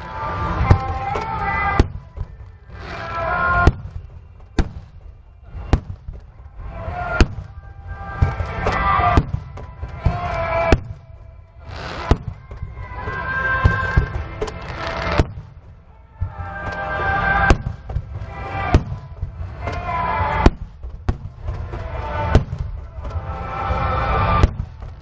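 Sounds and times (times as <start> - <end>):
music playing: 0.0 - 25.0
firework shells bursting: 13.6 - 15.7.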